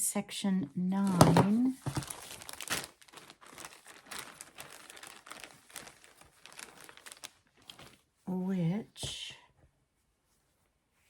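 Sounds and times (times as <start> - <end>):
fabric rustling and crinkling: 1.0 - 8.3.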